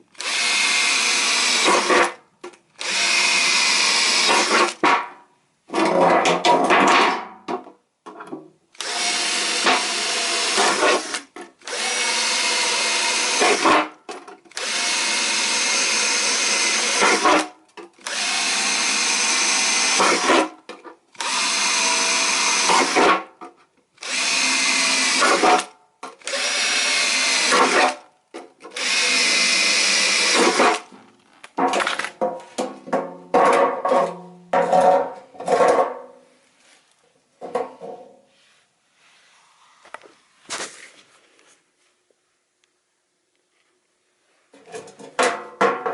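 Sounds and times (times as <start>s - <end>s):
electric drill drilling into tin: 0.2s - 2.2s, 2.8s - 4.8s, 8.8s - 13.9s, 14.5s - 20.5s, 21.2s - 23.2s, 24.0s - 28.0s, 28.7s - 30.9s.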